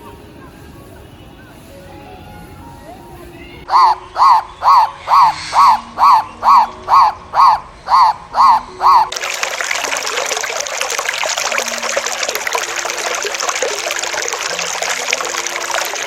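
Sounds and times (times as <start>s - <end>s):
animal calls rising and falling: 3.6s - 16.0s
trickling splashing water: 3.7s - 16.0s.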